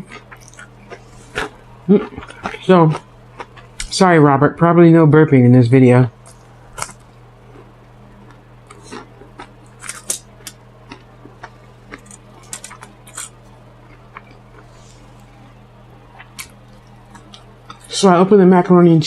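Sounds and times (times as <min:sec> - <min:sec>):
person chewing and smacking: 0:00.0 - 0:03.9, 0:06.2 - 0:15.3, 0:16.0 - 0:17.9
low steady hum: 0:00.0 - 0:19.0.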